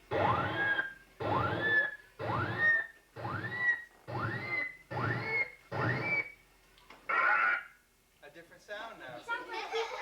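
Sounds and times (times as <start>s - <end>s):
synthesizer whistle notes gliding up: 0.2s - 6.4s.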